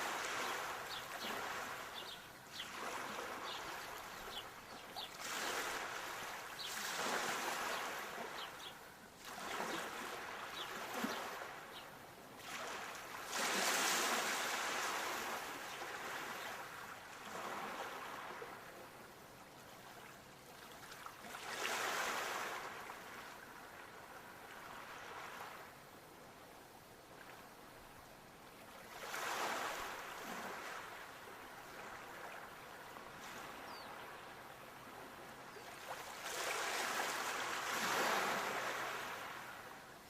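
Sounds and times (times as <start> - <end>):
sea waves washing ashore: 0.0 - 11.8, 12.4 - 19.0, 19.8 - 25.8, 28.5 - 40.0.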